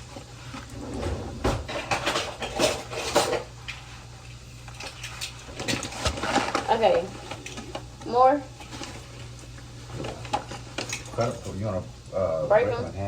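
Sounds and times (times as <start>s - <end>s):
pots and utensils clinking: 0.9s - 3.8s.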